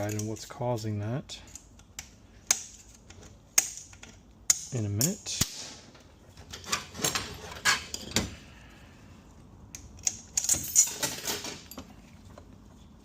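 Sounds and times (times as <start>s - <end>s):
metal parts clinking: 0.0s - 0.5s, 9.7s - 12.0s.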